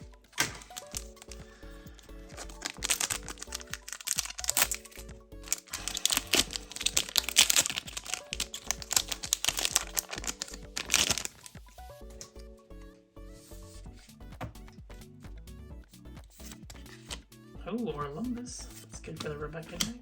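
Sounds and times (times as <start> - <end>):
background music: 0.0 - 20.0
foil wrapper crinkling: 0.3 - 1.6, 2.3 - 11.6.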